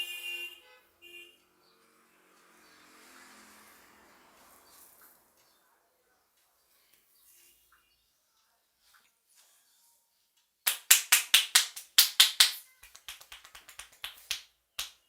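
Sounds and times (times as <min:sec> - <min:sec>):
hand slaps on head: 0:10.7 - 0:15.0.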